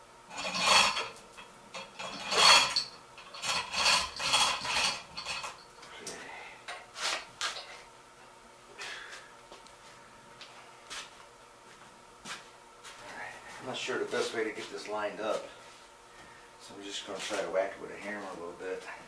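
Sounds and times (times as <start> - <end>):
dolly scraping across floor: 2.0 - 5.6.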